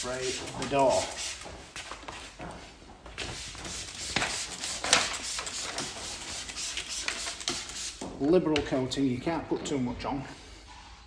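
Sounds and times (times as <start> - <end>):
spray bottle hissing spritzes: 3.3 - 8.0.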